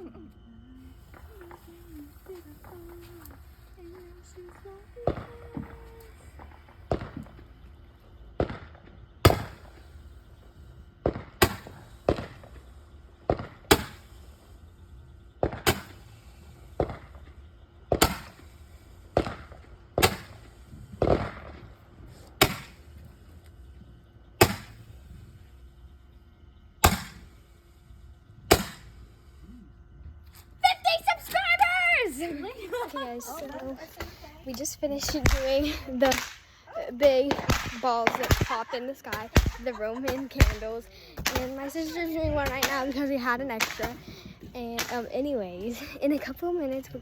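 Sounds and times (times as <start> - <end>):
roman candle firing pops: 8.4 - 9.9, 11.1 - 12.6, 13.3 - 14.3, 15.4 - 23.7, 24.4 - 25.0, 26.8 - 27.5, 28.5 - 29.0, 33.5 - 36.5, 37.1 - 43.0.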